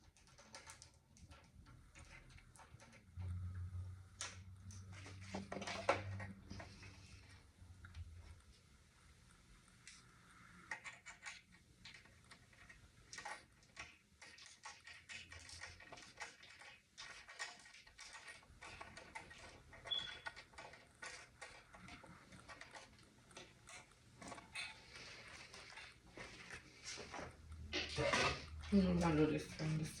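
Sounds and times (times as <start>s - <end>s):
high squeak: 19.9s - 20.2s.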